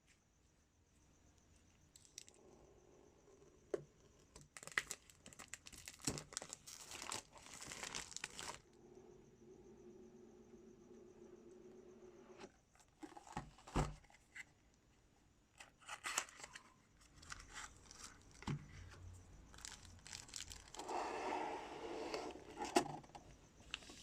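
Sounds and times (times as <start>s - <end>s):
packaging tearing and crinkling: 4.6s - 8.6s, 19.6s - 20.8s.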